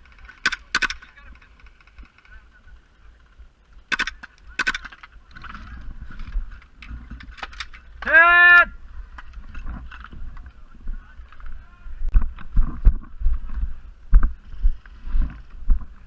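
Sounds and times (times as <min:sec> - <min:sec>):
airsoft pistol shots: 0:00.4 - 0:01.0.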